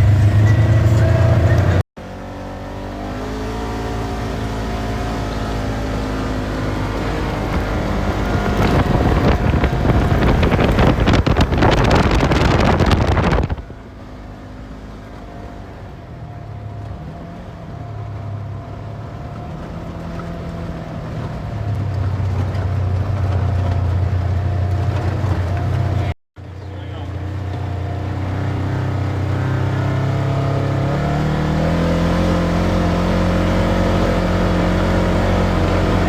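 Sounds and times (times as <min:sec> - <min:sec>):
vehicle engine running hard: 0:00.0 - 0:36.0
rushing noise: 0:07.9 - 0:13.7.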